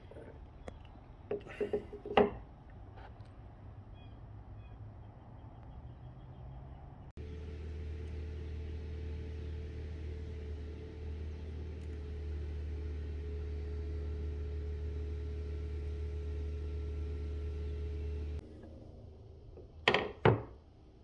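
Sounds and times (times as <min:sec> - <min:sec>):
machine humming: 0:07.2 - 0:18.4.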